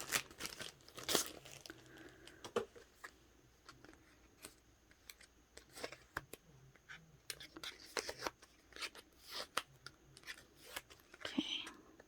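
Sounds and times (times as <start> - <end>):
plastic packaging crinkling: 0.0 - 2.4.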